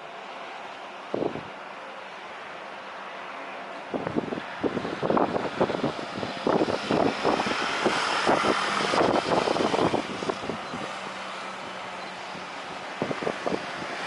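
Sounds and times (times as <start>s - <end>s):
jet engine noise: 0.0s - 14.0s
wind buffeting microphone: 1.1s - 1.6s, 3.8s - 14.0s.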